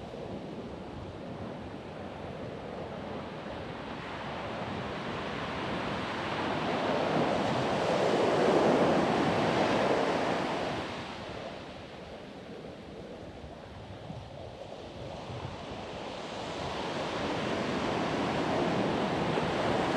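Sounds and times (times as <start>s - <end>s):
ocean surf on sandy beach: 3.4s - 12.0s, 15.9s - 19.9s.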